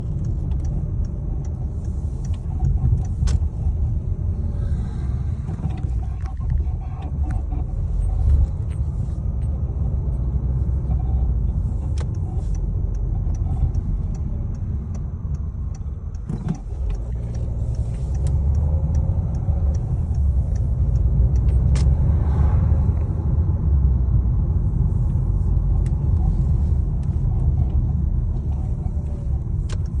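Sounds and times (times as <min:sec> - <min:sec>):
sharp clicks: 0:00.0 - 0:04.2, 0:11.3 - 0:22.2, 0:26.9 - 0:30.0
car creaking: 0:00.0 - 0:23.5, 0:24.5 - 0:30.0
car driving low rumble: 0:00.0 - 0:30.0.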